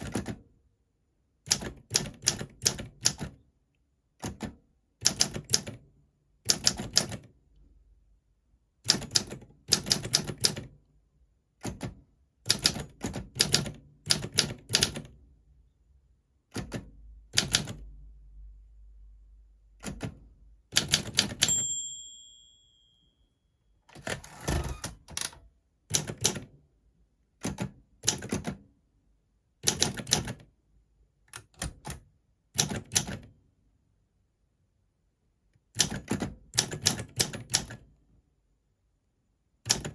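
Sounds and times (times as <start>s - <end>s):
typewriter bell ringing: 21.4s - 23.1s.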